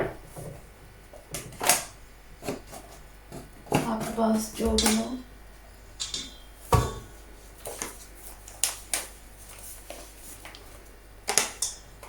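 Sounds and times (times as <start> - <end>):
utensils clinking against a bowl: 3.7 - 5.2, 6.0 - 7.2, 11.3 - 12.0.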